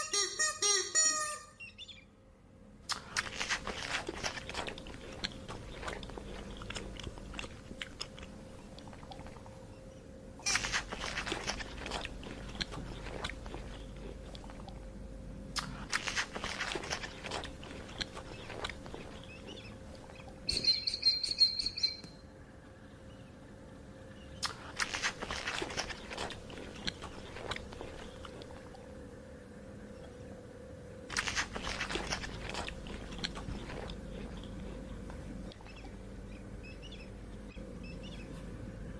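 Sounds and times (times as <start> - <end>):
small animal chewing food: 2.9 - 9.7, 10.4 - 20.9, 24.3 - 30.2, 31.1 - 38.6.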